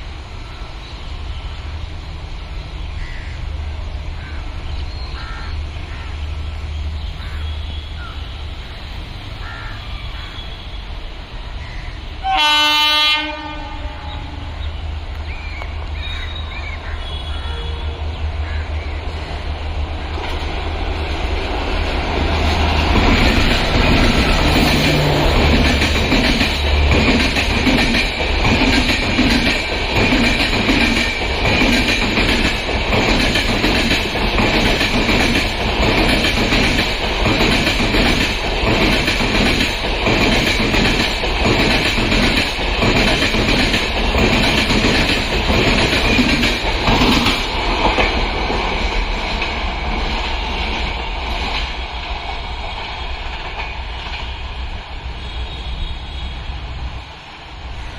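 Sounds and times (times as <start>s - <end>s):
train wheels clattering over rail joints: 20.1s - 54.4s.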